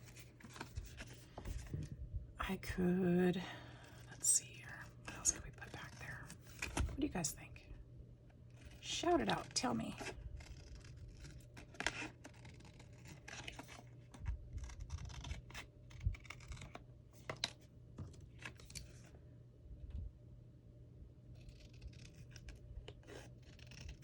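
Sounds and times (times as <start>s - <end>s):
scissors snipping paper: 14.6s - 16.8s.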